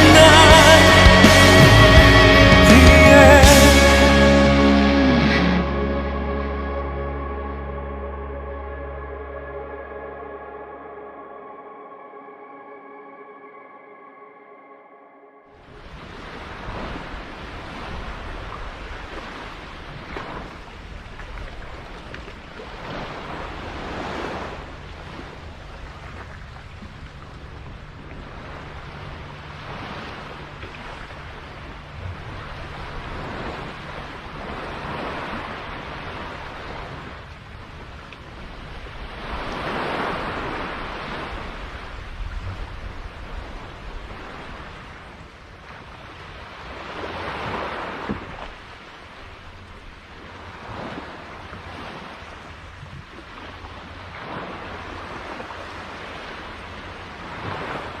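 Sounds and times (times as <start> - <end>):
sea waves washing: 0.0 - 9.2, 15.6 - 58.0
low steady drone: 0.0 - 15.8.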